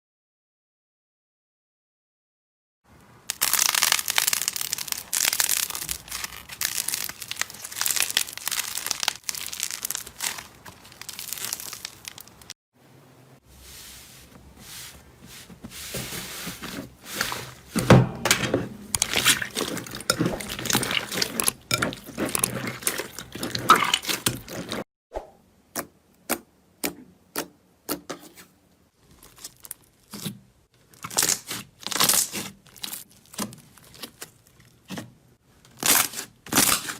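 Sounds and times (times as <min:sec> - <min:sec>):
slime crackling and crinkling: 0:03.2 - 0:12.6, 0:14.3 - 0:17.9, 0:18.5 - 0:24.8, 0:29.0 - 0:36.9.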